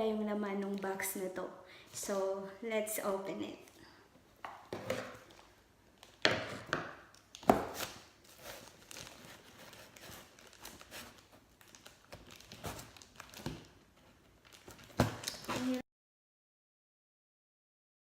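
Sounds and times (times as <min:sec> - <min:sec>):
packaging crinkling and rustling: 0:04.6 - 0:15.8.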